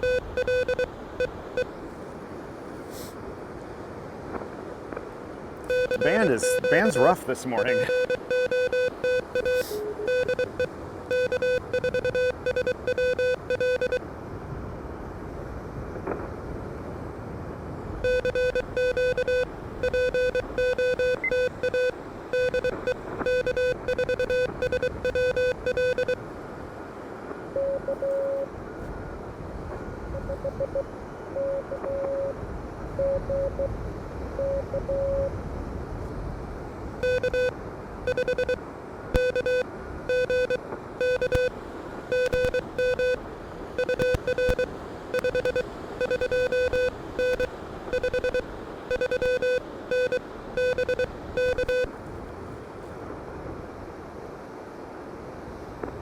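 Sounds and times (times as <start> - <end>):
faint morse signal: 0.0 - 1.7, 5.7 - 14.0, 18.0 - 26.2, 27.5 - 29.1, 29.8 - 32.4, 34.4 - 35.4, 37.0 - 37.5, 38.1 - 38.6, 39.2 - 41.5, 42.1 - 43.2, 43.8 - 51.9
radio band noise: 5.7 - 10.6
loud buzzy morse tone: 5.7 - 14.0, 18.0 - 26.2, 37.0 - 37.5, 42.1 - 43.2, 43.8 - 51.9.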